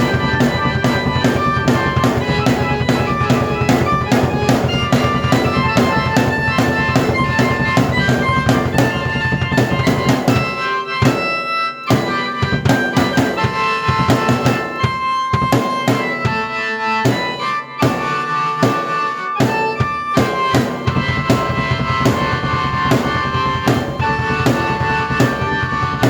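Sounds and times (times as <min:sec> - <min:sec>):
busy drum beat: 0:00.0 - 0:26.0
sustained keyboard notes: 0:00.0 - 0:26.0.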